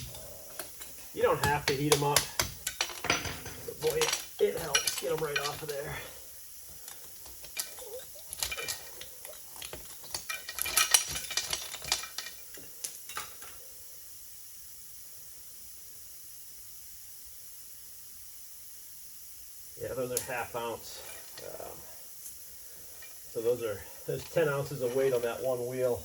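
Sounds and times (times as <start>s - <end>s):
metallic clicks and scrapes: 0.0s - 5.9s, 6.8s - 13.6s
faint steady hiss: 0.0s - 26.0s.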